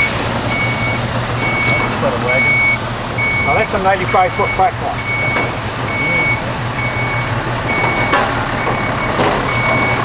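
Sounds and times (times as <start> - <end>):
engine idling: 0.0 - 10.0
vehicle backup alarm beeping: 0.0 - 10.0.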